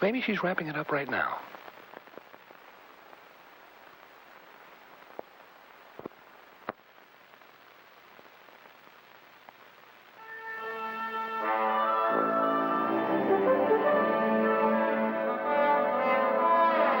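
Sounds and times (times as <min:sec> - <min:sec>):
steady hiss: 0:00.0 - 0:17.0
clicks and pops: 0:01.5 - 0:02.8, 0:04.9 - 0:10.1
brass music: 0:10.2 - 0:17.0.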